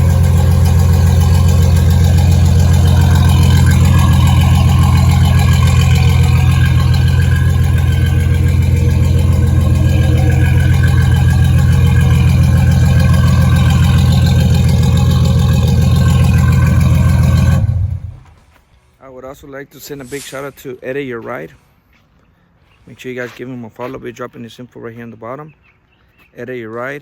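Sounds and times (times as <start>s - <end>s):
truck engine idling: 0.0s - 18.5s.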